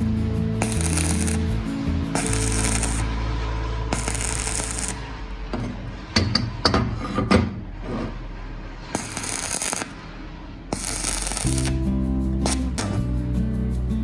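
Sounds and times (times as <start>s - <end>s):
harsh noisy bursts: 3.9s - 5.4s, 8.4s - 11.8s.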